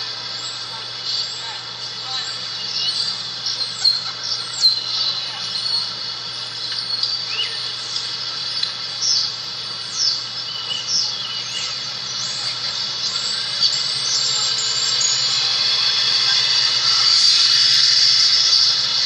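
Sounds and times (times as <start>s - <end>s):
train hissing: 0.0s - 19.0s
high squeals: 11.4s - 19.0s.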